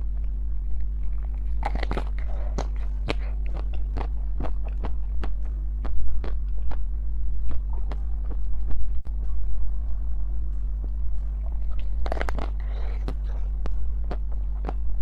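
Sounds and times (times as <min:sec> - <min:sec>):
chewing with wet mouth clicks: 0:00.0 - 0:09.1, 0:10.8 - 0:15.0
steady low hum: 0:00.0 - 0:15.0.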